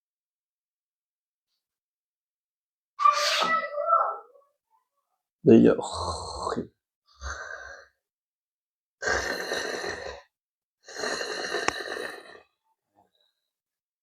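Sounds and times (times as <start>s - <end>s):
forceful nasal exhalations: 9.0s - 12.6s.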